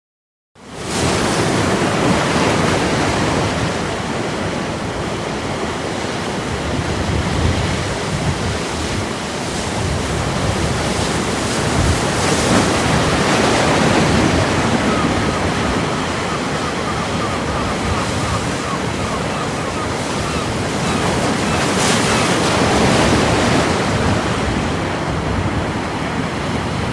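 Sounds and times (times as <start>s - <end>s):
sea waves washing on shore: 0.6s - 26.9s.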